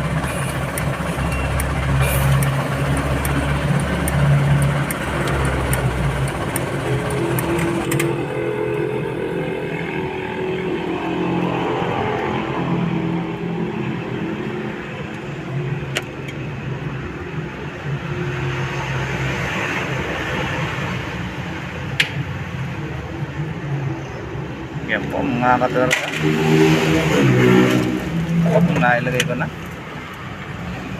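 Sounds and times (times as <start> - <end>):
vehicle engine idling: 0.0 - 18.1.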